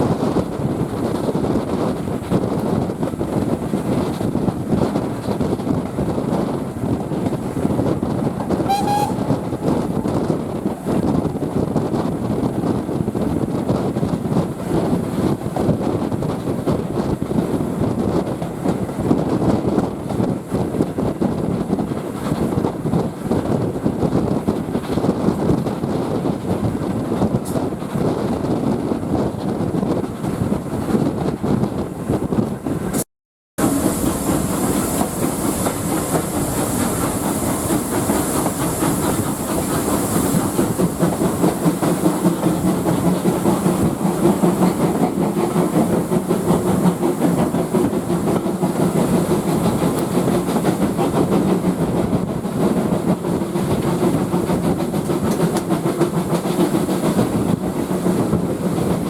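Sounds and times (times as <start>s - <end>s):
steam train wheel clatter: 0.0s - 33.0s, 33.6s - 59.0s
steam hissing: 33.6s - 59.0s.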